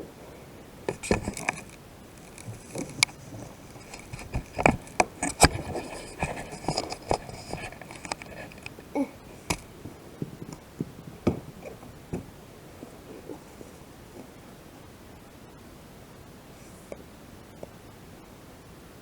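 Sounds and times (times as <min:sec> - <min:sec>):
plastic scraping on plastic: 0:00.9 - 0:08.8, 0:09.4 - 0:11.8.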